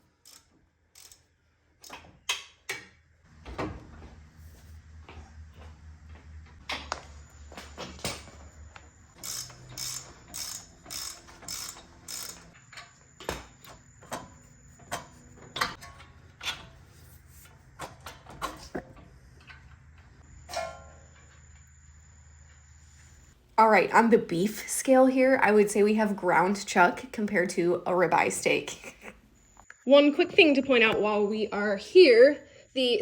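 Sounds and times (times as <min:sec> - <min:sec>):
ratchet wrench clicking: 0:00.1 - 0:01.3, 0:09.2 - 0:12.6.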